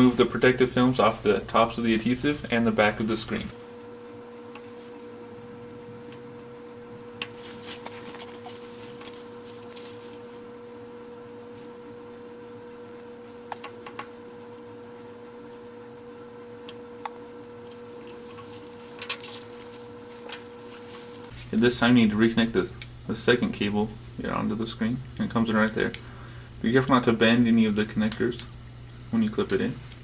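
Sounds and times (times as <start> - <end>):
steady electrical hum: 0.0 - 30.0
plastic film peeling crackles: 7.2 - 10.4, 18.0 - 21.4.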